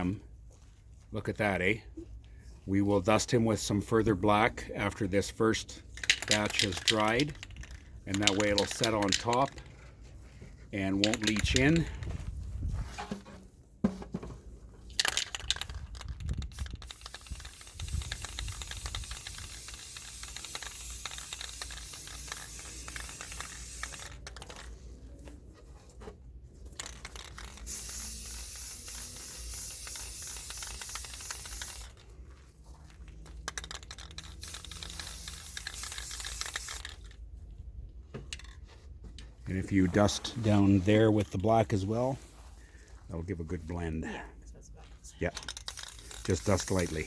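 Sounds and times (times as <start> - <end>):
spray paint can hissing: 5.9 - 9.7, 11.0 - 12.0, 14.9 - 24.8, 26.7 - 32.0, 33.2 - 37.2, 45.4 - 47.0.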